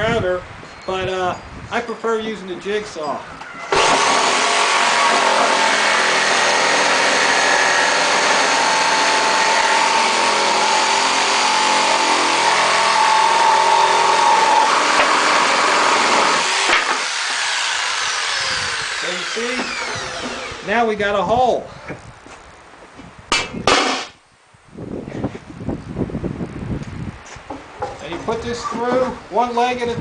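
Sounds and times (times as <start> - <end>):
electric jigsaw cutting wood: 3.7 - 20.7.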